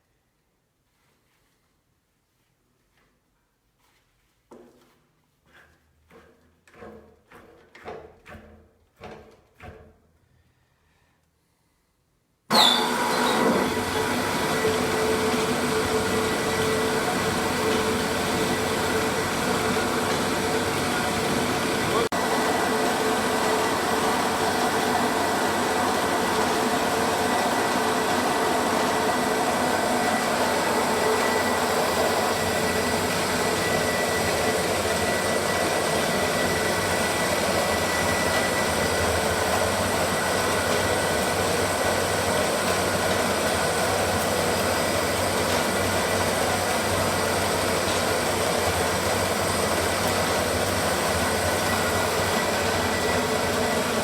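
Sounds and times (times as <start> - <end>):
sharpening machine whining: 12.5 - 47.0.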